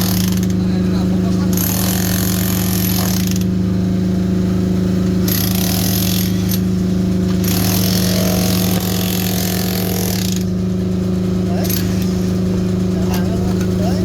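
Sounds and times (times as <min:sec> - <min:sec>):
engine humming: 0:00.0 - 0:14.0.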